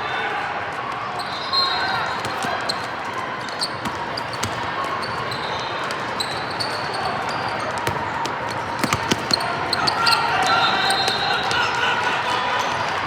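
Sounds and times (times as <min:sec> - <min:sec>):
murmur of gym noise: 0:00.0 - 0:13.0
sneaker squeaks: 0:01.2 - 0:13.0
basketball bouncing on gym floor: 0:02.2 - 0:02.9, 0:03.7 - 0:05.1, 0:07.6 - 0:10.0.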